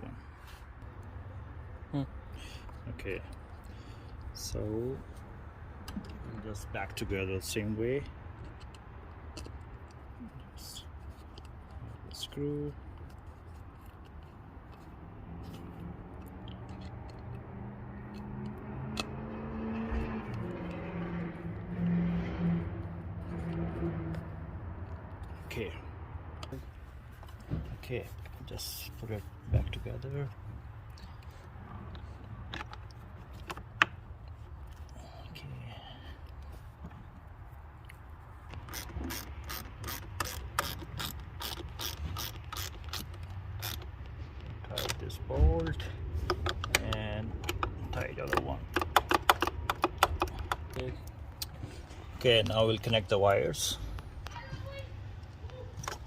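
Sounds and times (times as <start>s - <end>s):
ratchet wrench clicking: 38.6s - 44.1s
screwdriver and small parts clicking: 38.6s - 45.0s, 45.6s - 51.2s.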